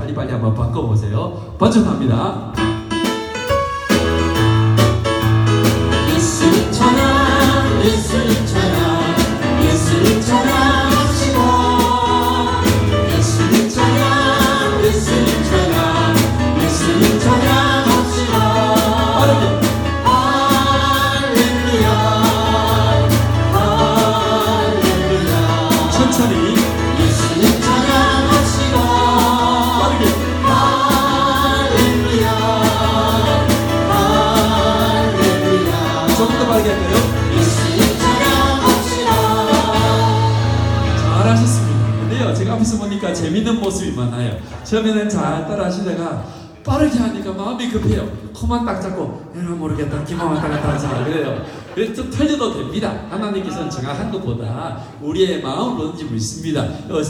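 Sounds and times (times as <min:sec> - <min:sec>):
band with strong bass: 0:02.6 - 0:42.6
voices singing together: 0:05.0 - 0:42.4.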